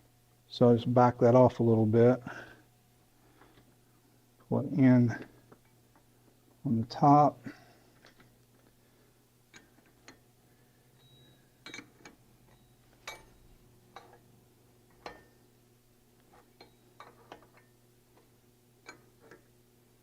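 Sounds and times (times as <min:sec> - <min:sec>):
metal clicks and clinks: 0:11.0 - 0:14.2.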